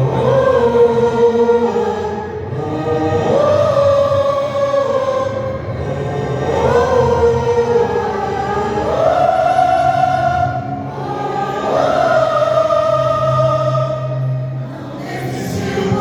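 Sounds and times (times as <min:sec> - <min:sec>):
low steady accompaniment: 0:00.0 - 0:16.0
vocal group singing in harmony: 0:00.0 - 0:16.0.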